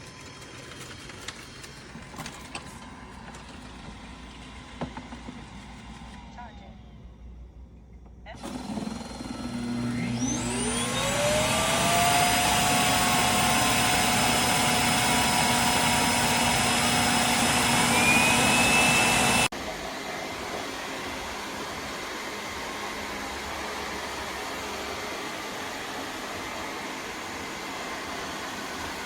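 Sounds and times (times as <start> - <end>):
suction motor whining: 8.4 - 19.5.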